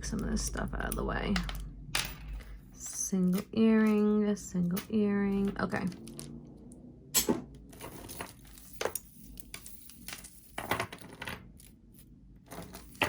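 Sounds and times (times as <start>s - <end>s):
jewelry clinking on a table: 7.2s - 11.8s, 12.5s - 13.0s.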